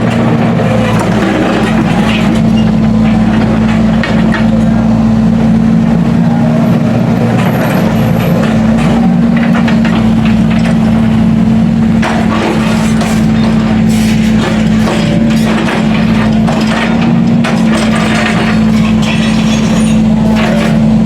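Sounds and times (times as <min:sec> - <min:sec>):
heavy machinery engine running: 0:00.0 - 0:21.0.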